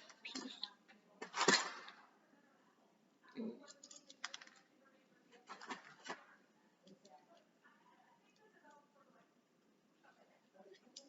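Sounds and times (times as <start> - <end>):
plastic bricks clicking and clattering: 3.7 - 4.6.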